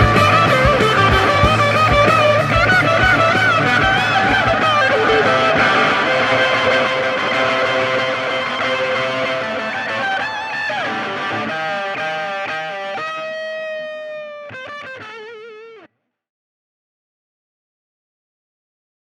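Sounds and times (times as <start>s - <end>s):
rock music with electric guitar: 0.0s - 15.9s.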